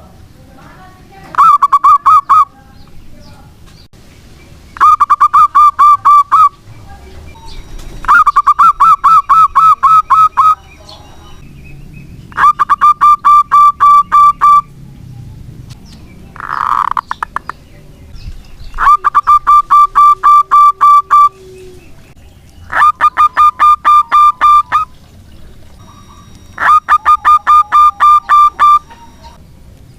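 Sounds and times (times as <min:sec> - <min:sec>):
dove cooing: 0:07.7 - 0:10.6, 0:12.3 - 0:14.8, 0:18.7 - 0:29.4.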